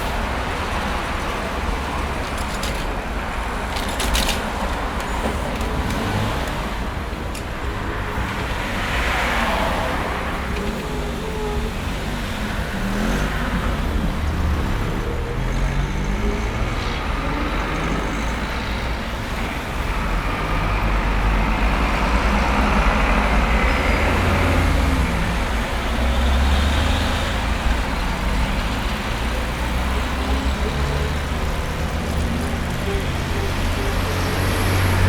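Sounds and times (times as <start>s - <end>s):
road traffic rumble: 0.0s - 35.0s.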